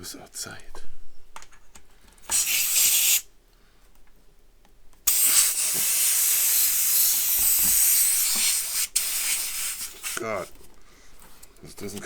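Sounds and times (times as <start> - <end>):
air hissing from tire valve: 2.3 - 3.3, 5.1 - 10.4.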